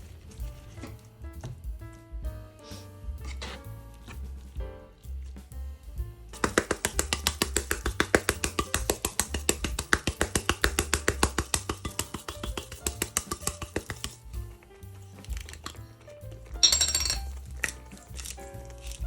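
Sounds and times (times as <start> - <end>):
background music with bass line: 0.0 - 19.0
fast sharp taps: 6.4 - 14.4.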